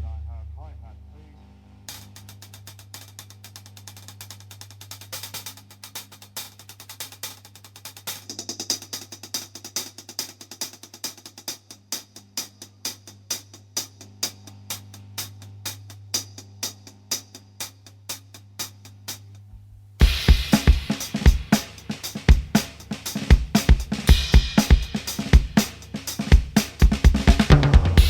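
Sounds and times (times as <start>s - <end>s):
steady low hum: 0.0s - 1.9s
rapid clicking percussion: 1.9s - 19.3s, 20.0s - 28.0s.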